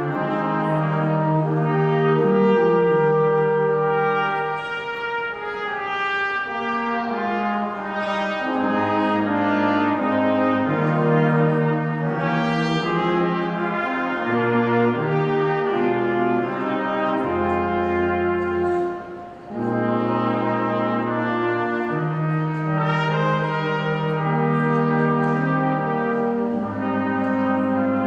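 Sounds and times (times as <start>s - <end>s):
brass ensemble playing: 0.0s - 28.0s.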